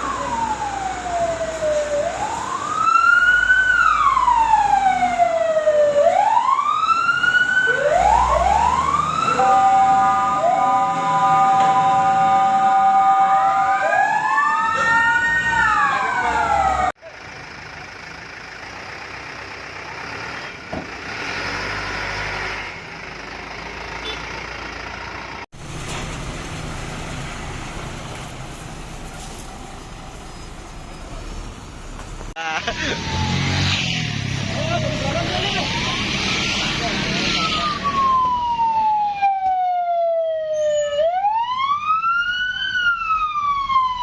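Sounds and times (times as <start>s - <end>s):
fire engine siren: 0.0s - 17.0s, 32.4s - 44.0s
street and vehicle noise: 0.0s - 44.0s.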